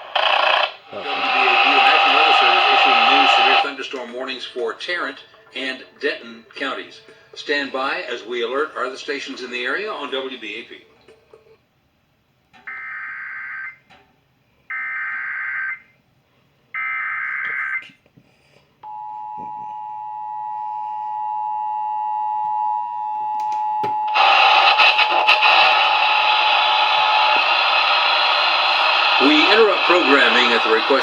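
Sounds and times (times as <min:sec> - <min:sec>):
digital data header bursts: 0:00.0 - 0:03.7, 0:24.1 - 0:31.0.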